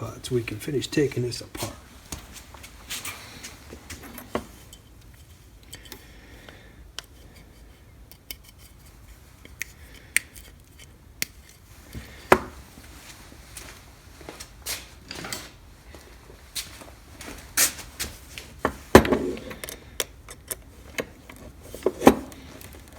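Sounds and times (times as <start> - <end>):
metallic clicks and clinks: 19.4 - 22.9.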